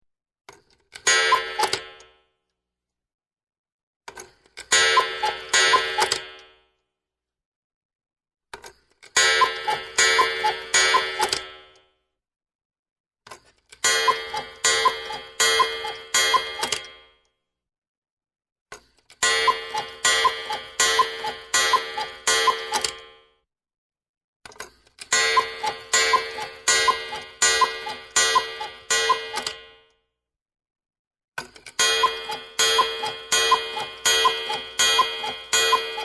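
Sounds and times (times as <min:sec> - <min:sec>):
clock mechanism click: 0:00.5 - 0:02.1, 0:04.1 - 0:06.6, 0:08.6 - 0:11.8, 0:13.7 - 0:17.1, 0:19.1 - 0:23.2, 0:24.5 - 0:29.8, 0:31.4 - 0:36.0
cuckoo clock calling: 0:01.0 - 0:02.0, 0:04.6 - 0:06.4, 0:09.2 - 0:11.7, 0:13.8 - 0:17.0, 0:19.2 - 0:23.2, 0:25.0 - 0:29.8, 0:31.6 - 0:36.0.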